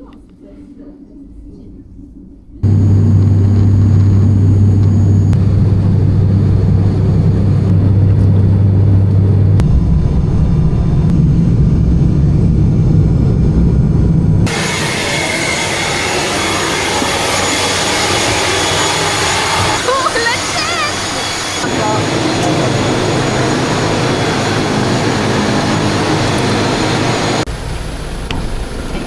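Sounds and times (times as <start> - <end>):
broad noisy rumble: 0.0 - 29.0
vehicle engine hum: 2.6 - 29.0.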